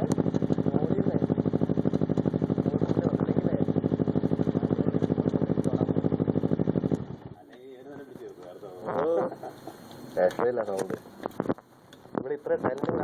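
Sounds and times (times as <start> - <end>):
motorcycle engine idling: 0.0 - 9.9.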